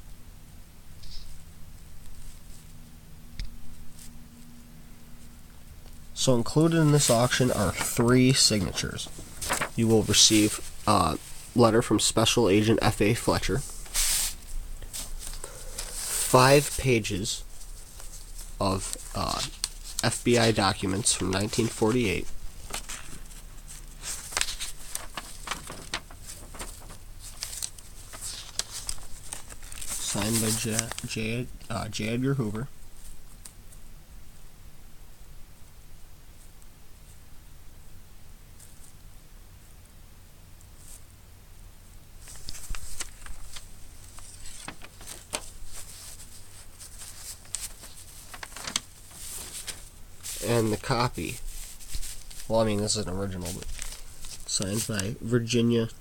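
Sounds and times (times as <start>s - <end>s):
paper rustling: 6.0s - 31.8s, 42.2s - 55.6s.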